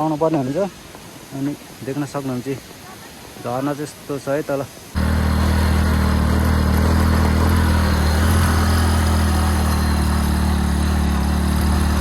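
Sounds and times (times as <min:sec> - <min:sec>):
wind and road noise: 0:00.0 - 0:12.0
motorcycle engine running: 0:05.0 - 0:12.0.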